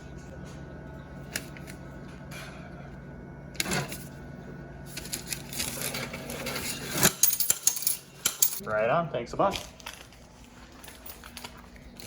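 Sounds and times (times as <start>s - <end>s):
rapid clicks and clatter of cash: 4.9s - 8.6s.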